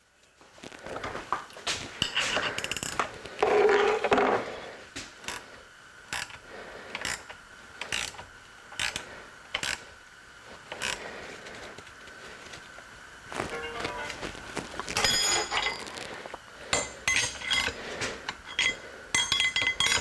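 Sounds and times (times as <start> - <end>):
hand tools clicking on metal: 6.1 - 8.2, 8.8 - 9.8, 14.9 - 16.1, 16.7 - 20.0.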